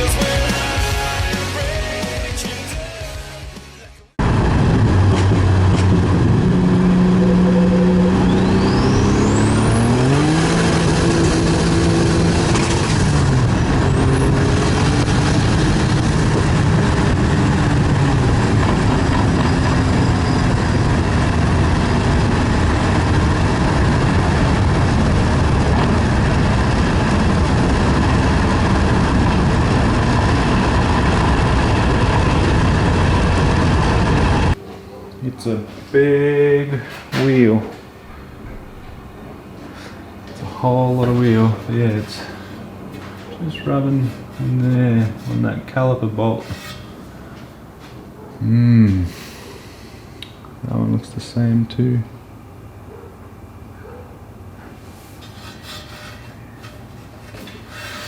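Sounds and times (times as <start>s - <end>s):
road noise: 0.0s - 58.0s
car engine revving: 4.2s - 34.7s.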